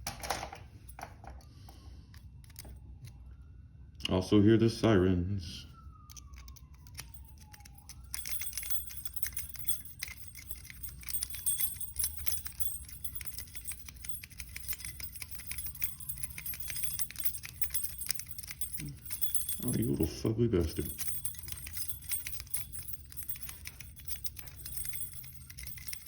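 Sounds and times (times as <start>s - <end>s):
lock picks clicking in padlock: 2.1s - 2.8s, 6.0s - 20.1s, 20.7s - 26.0s.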